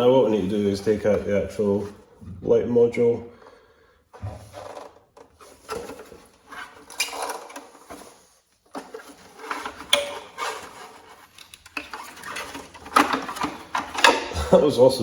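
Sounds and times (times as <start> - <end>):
plastic clicks and rattles: 6.8 - 8.1, 8.7 - 14.3.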